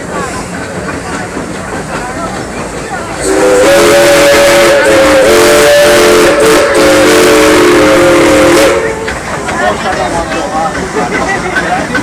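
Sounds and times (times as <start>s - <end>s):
steam hissing: 0.0s - 12.0s
steam whistle chord: 3.2s - 9.0s.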